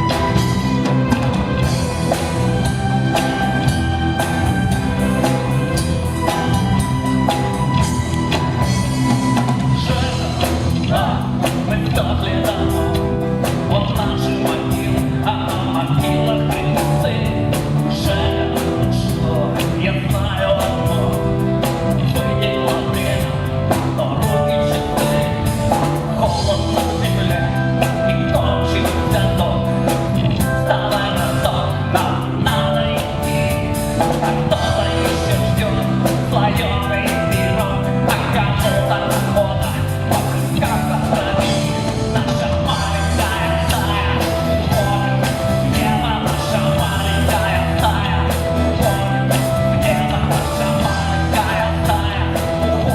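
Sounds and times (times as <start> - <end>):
person singing: 0.0 - 52.9
rock band playing: 0.0 - 52.9.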